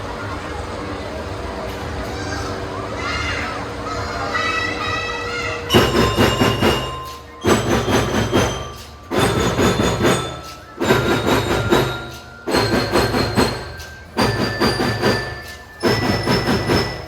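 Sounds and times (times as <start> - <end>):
held high notes: 5.1 - 17.0
marching drum band playing: 5.7 - 17.0.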